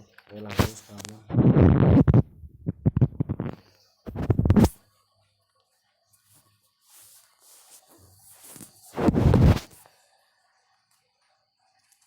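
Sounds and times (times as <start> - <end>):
faint rustling of packets: 4.8 - 12.0.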